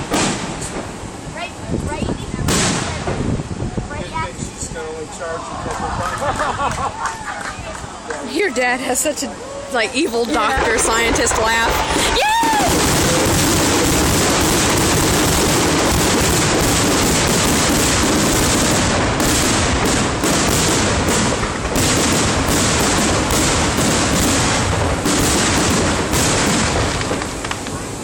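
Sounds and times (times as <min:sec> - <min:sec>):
fireworks bangs and crackling: 0:00.0 - 0:09.2, 0:09.8 - 0:28.0.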